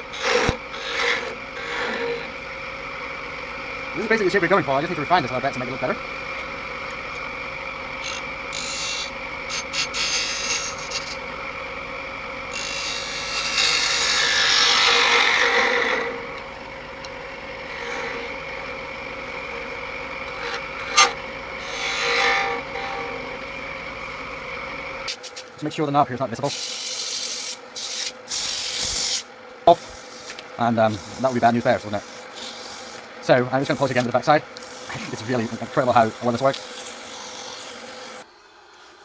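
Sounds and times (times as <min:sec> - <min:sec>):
gouge rasping on wood: 0:00.0 - 0:02.4, 0:08.0 - 0:11.5, 0:12.5 - 0:24.9, 0:26.4 - 0:38.2
wood lathe humming: 0:00.0 - 0:39.0.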